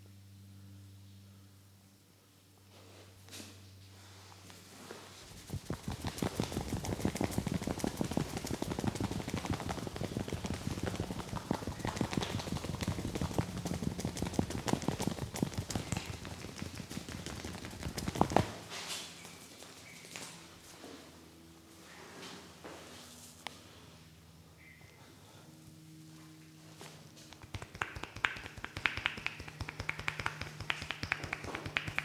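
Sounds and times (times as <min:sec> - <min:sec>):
hands tapping head: 0:05.3 - 0:18.5, 0:27.3 - 0:32.0.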